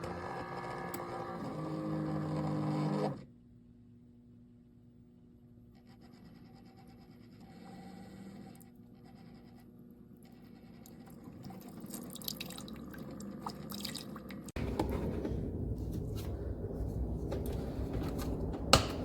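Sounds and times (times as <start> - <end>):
coffee maker brewing: 0.0 - 3.2, 10.6 - 19.0.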